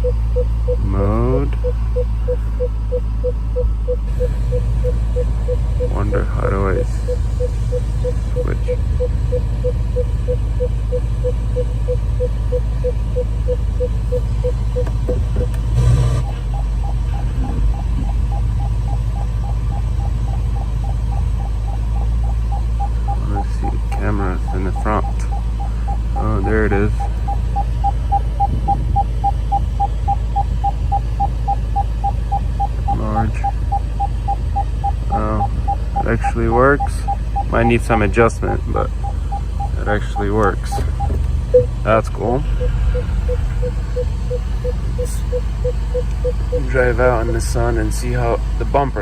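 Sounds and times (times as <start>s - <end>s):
short electronic beeps: 0.0s - 47.6s
low engine hum: 0.0s - 49.0s.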